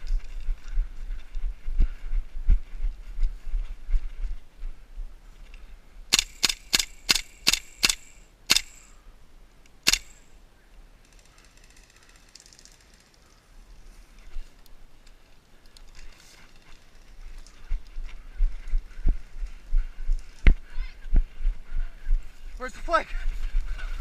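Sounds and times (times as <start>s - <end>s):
airsoft rifle shots: 6.1s - 8.9s, 9.8s - 10.3s
faint rustling: 11.1s - 20.7s.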